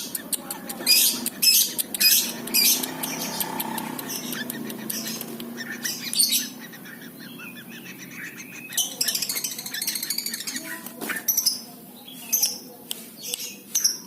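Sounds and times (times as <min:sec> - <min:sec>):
light ticks: 0:00.0 - 0:06.3
bird chirping: 0:00.0 - 0:14.0.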